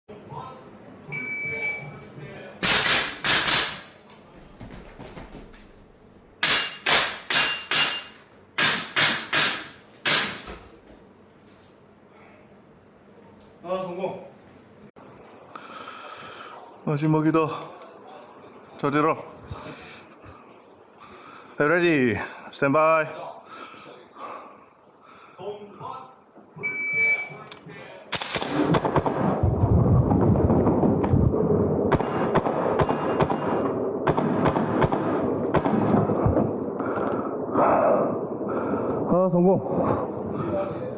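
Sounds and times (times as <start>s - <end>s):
airsoft rifle shots: 2.6s - 4.0s, 6.4s - 10.5s, 28.1s - 29.4s, 31.9s - 36.5s
dense background noise: 11.0s - 28.8s.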